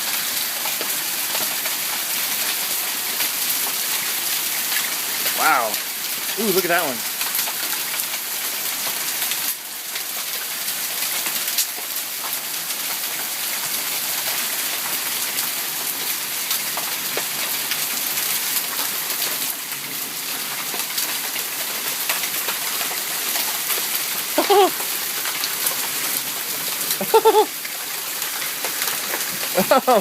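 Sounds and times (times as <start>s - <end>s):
hail and rain pelting: 0.0s - 30.0s
hailstones clicking: 18.6s - 30.0s.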